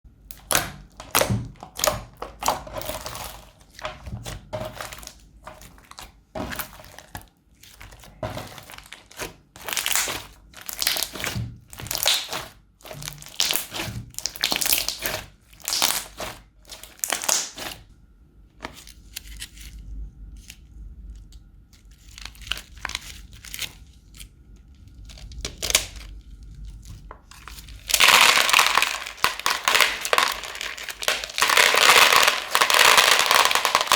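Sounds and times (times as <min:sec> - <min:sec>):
crunchy slime crackling: 0:00.2 - 0:17.9, 0:21.8 - 0:33.9.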